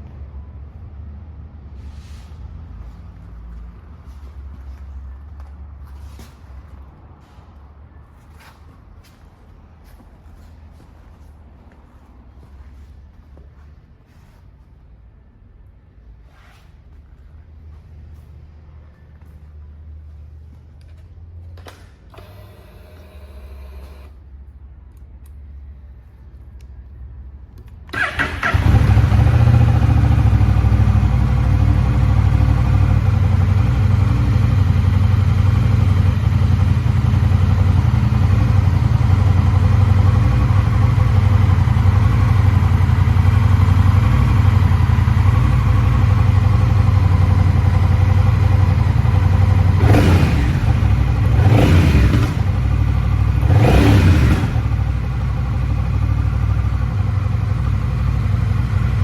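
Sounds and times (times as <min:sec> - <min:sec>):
engine revving: 0:28.0 - 0:33.1, 0:49.0 - 0:55.2
motorcycle engine idling: 0:28.0 - 0:59.0.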